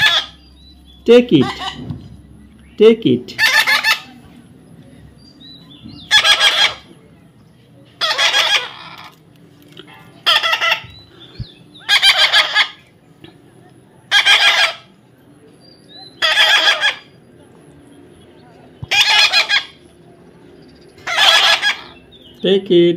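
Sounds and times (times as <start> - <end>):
baby parrot squawking: 0.0 - 0.4, 1.4 - 1.9, 3.3 - 4.2, 6.0 - 6.9, 8.0 - 9.2, 10.2 - 11.1, 11.8 - 12.8, 14.1 - 14.9, 16.1 - 17.1, 18.9 - 19.8, 21.0 - 22.0.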